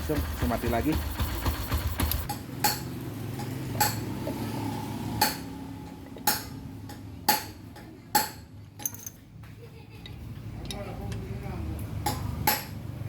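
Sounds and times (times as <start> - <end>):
metallic clinks of tools: 8.8 - 9.3.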